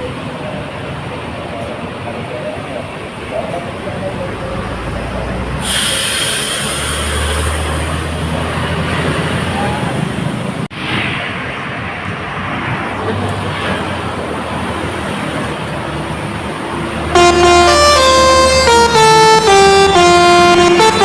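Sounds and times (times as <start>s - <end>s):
bus engine: 0.0s - 21.0s
traffic noise: 0.0s - 21.0s
multi-tone bus horn tune: 17.1s - 21.0s.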